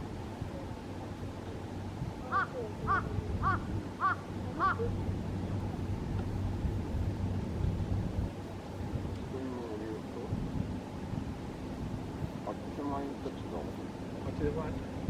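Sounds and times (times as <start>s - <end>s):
low wind rumble: 0.0s - 15.0s
crow cawing: 2.3s - 4.9s.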